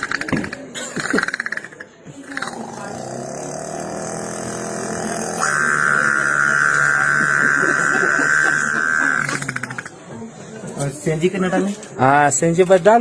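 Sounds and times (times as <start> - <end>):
boy imitating generator: 0.0 - 9.9.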